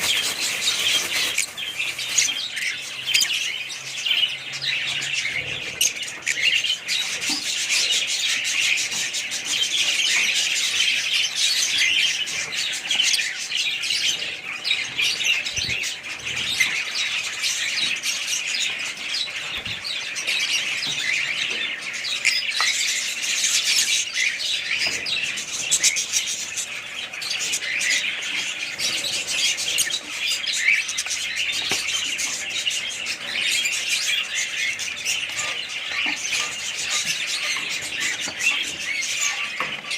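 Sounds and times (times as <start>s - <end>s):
small birds chirping: 0.0s - 39.9s.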